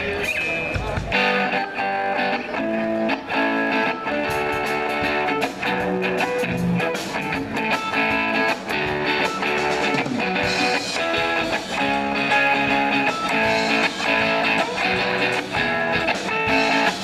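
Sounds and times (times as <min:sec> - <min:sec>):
guitar strumming chords: 0:00.0 - 0:17.0.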